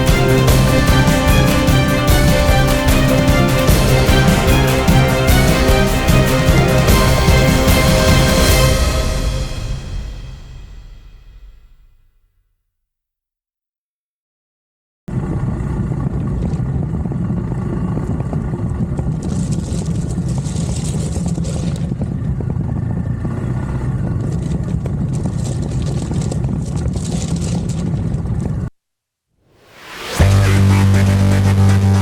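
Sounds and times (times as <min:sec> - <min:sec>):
motorcycle running: 0:00.0 - 0:10.5.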